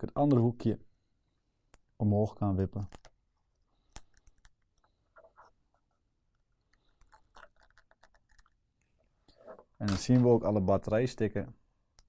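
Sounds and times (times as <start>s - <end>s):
plastic tool scraping phone: 6.3s - 8.6s.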